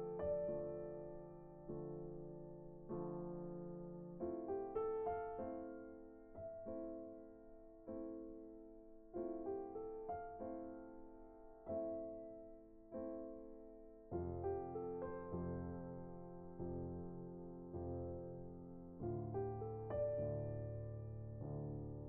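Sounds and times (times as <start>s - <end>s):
soft piano chords: 0.0s - 22.0s.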